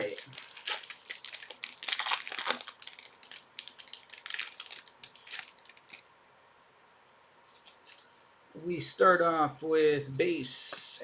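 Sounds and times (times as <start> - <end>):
plastic crinkling and rustling: 0.0 - 6.1.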